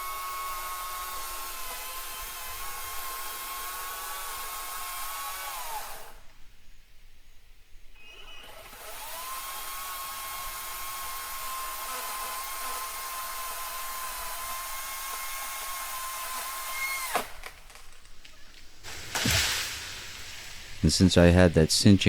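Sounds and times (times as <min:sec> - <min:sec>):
chainsaw revving: 0:00.0 - 0:06.2, 0:08.4 - 0:17.8.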